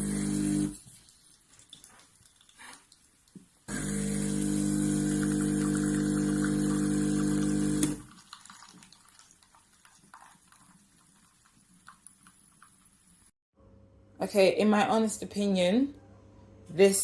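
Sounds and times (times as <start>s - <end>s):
espresso machine pump buzzing: 0.0s - 0.8s, 3.7s - 8.0s.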